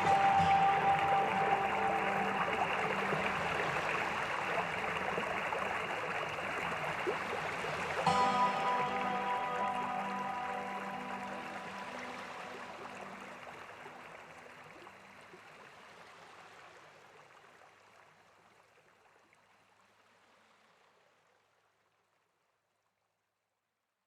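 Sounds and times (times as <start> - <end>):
background music: 0.0 - 5.9, 8.0 - 13.7
stream running water: 0.0 - 22.7.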